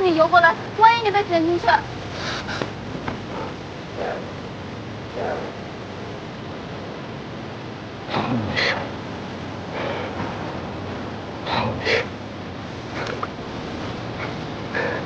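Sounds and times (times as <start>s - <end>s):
steady hiss: 0.0s - 15.0s
person breathing hard and gasping: 14.2s - 15.0s.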